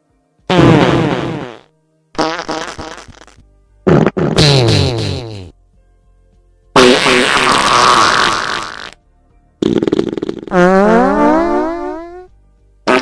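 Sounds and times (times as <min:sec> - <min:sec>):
farts: 0:00.5 - 0:05.5, 0:06.8 - 0:09.0, 0:09.6 - 0:12.3.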